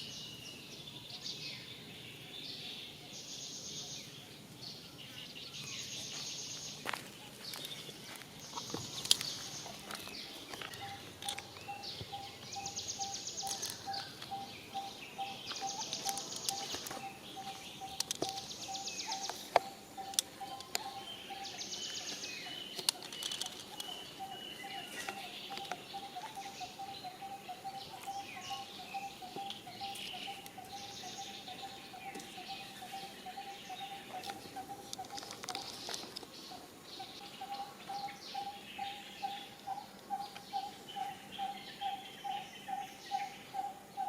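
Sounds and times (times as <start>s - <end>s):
sharp clicks: 15.8s - 17.0s, 17.8s - 21.0s, 22.1s - 24.0s.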